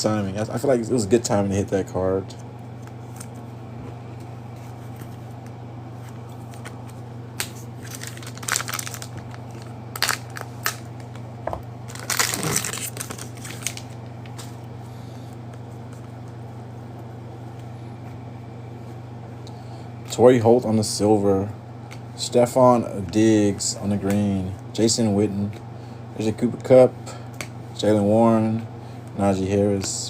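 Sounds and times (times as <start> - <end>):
steady low hum: 0.0 - 30.0
plastic wrapping crinkling and tearing: 7.8 - 11.2, 11.9 - 14.4.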